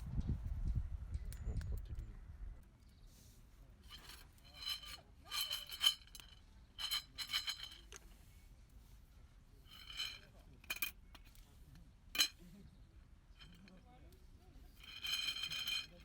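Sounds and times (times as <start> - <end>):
metallic clinking and rattling: 3.9 - 7.9, 9.7 - 11.3, 12.2 - 12.4, 13.4 - 13.8, 14.8 - 16.0.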